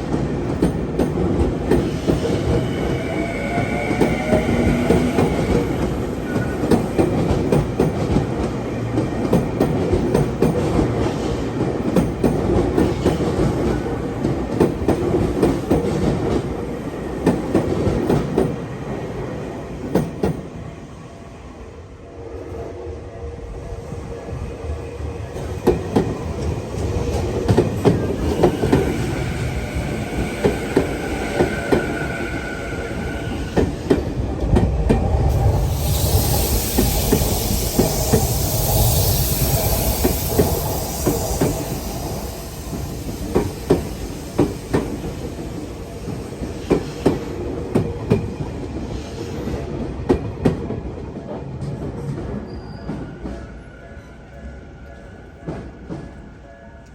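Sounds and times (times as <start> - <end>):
train wheels clacking: 0.0 - 19.0, 25.3 - 56.9
train rumble: 0.0 - 20.9, 21.8 - 56.9
train whine: 0.0 - 56.9
high hiss: 35.3 - 46.3.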